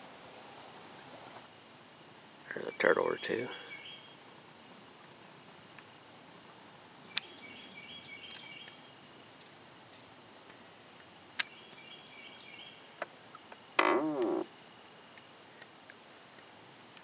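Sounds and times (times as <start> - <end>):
bird singing trilled phrase: 2.5 - 4.2.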